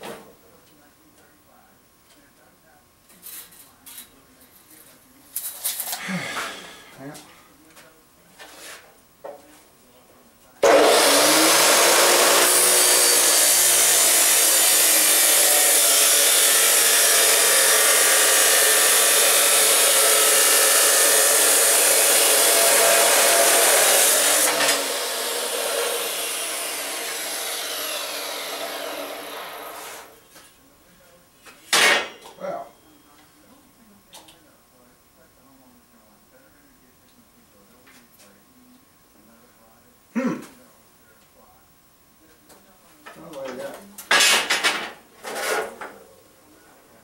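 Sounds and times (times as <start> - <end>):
chop saw cutting steel: 10.6 - 30.1, 44.1 - 45.8.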